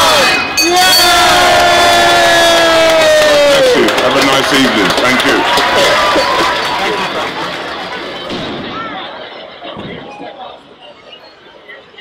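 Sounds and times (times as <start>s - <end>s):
long held cry: 0.0s - 3.9s
crowd cheering: 0.0s - 11.3s.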